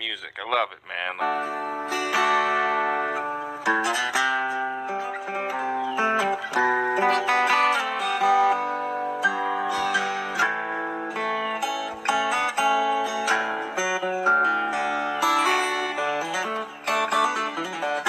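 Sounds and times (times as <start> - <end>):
fingerstyle acoustic guitar: 1.2 - 18.0.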